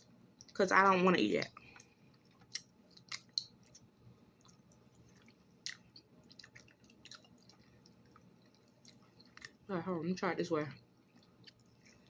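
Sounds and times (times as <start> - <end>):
faint chewing: 0.0 - 0.8, 1.4 - 9.7, 10.8 - 12.0
wet mouth clicks: 2.4 - 3.9.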